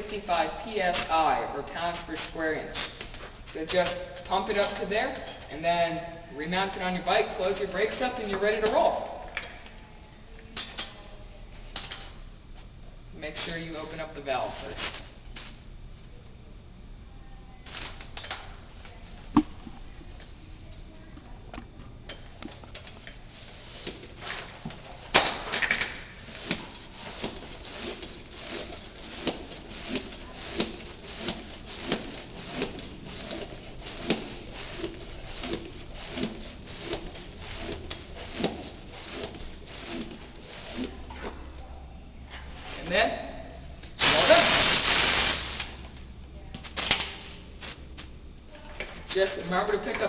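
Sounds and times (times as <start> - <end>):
hand pump strokes with air hiss: 0.0 - 4.9, 26.1 - 41.6, 43.7 - 46.0, 46.6 - 48.2
handling noises: 18.8 - 25.2.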